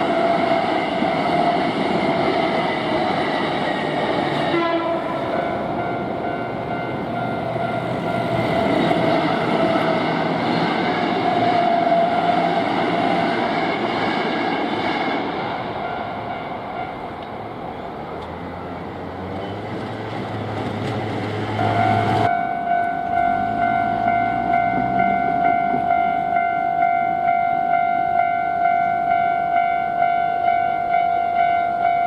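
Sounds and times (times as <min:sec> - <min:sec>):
train passing rumble: 0:00.0 - 0:32.0
level crossing warning bell: 0:05.0 - 0:09.0, 0:21.6 - 0:32.0
train motor hum: 0:17.0 - 0:26.4.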